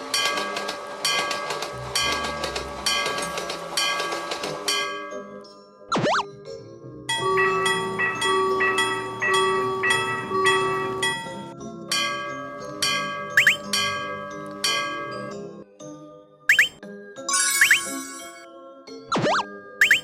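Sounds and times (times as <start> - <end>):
railroad crossing bell ringing: 7.1 - 15.3.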